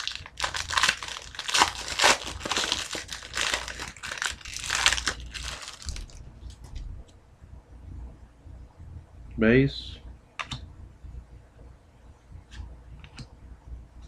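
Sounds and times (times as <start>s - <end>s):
wrapper crinkling and tearing: 0.0s - 6.6s.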